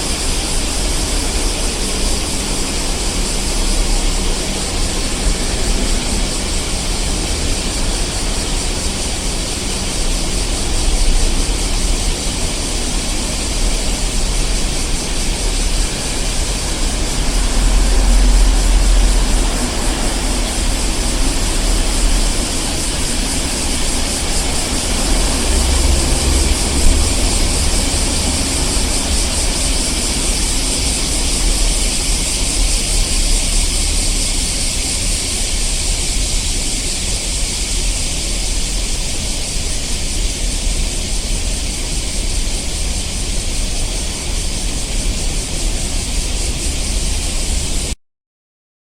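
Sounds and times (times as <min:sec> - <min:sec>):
heavy vehicle rumbling by: 0:00.0 - 0:36.8
passing traffic noise: 0:00.0 - 0:48.0.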